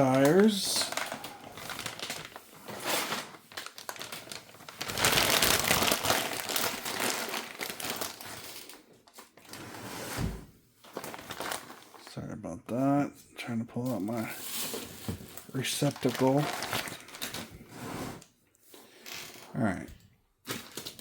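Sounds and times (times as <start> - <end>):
packaging crinkling and rustling: 0.0 - 9.7, 10.8 - 12.1, 13.9 - 17.6, 20.5 - 21.0.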